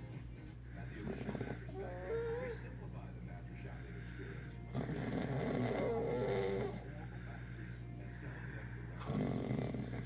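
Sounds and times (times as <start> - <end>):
person snoring: 4.0 - 10.0.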